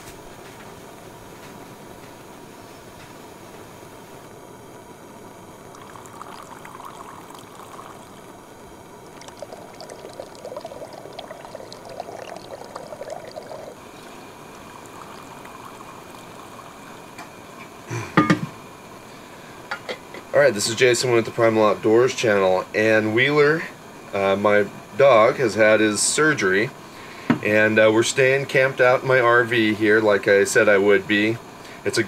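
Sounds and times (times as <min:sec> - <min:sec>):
stream water flowing: 0:05.6 - 0:17.1.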